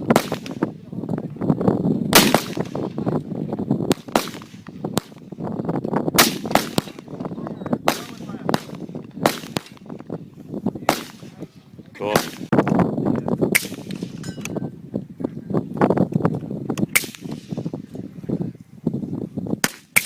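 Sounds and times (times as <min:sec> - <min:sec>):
gunshots with echo: 0:00.0 - 0:00.7, 0:02.1 - 0:03.1, 0:03.9 - 0:05.2, 0:06.2 - 0:07.2, 0:07.8 - 0:09.9, 0:10.8 - 0:11.4, 0:12.0 - 0:12.6, 0:13.5 - 0:14.2.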